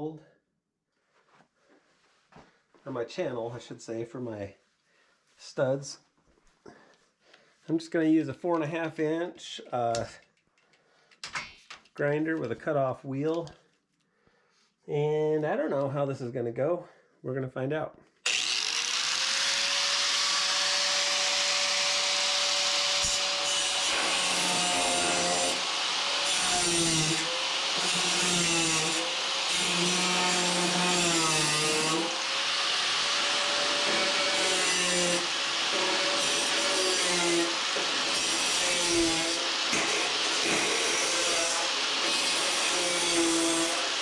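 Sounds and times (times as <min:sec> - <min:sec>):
angle grinder cutting metal: 0:18.3 - 0:44.0.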